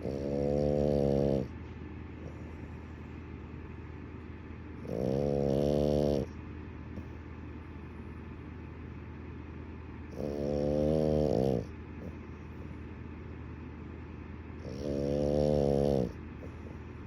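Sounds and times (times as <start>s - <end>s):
dog snoring: 0.0s - 1.6s, 4.8s - 6.4s, 10.1s - 12.6s, 14.6s - 16.8s
dog breathing: 0.0s - 3.4s.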